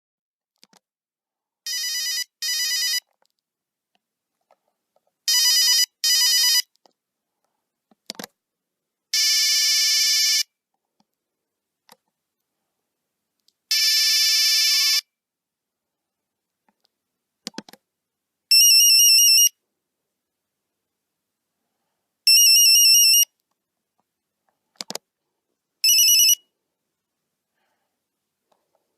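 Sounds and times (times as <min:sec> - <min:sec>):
monophonic phone ringtones: 0:01.7 - 0:03.0, 0:05.3 - 0:06.7, 0:18.5 - 0:19.5, 0:22.3 - 0:23.3, 0:25.8 - 0:26.4.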